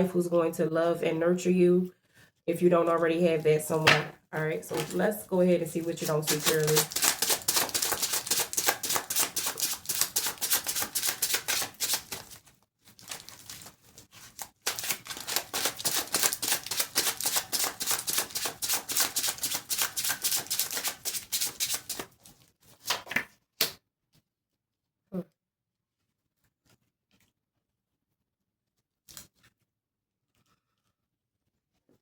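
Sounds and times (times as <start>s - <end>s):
cards shuffling: 4.7s - 5.1s, 6.0s - 12.4s, 13.0s - 23.3s.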